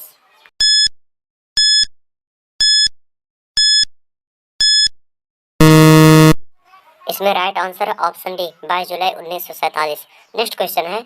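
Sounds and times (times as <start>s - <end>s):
short high-pitched beeps: 1.6s - 1.9s, 2.6s - 2.9s, 3.6s - 3.9s, 4.6s - 4.9s, 5.6s - 6.4s
low buzzer tone: 5.6s - 6.4s.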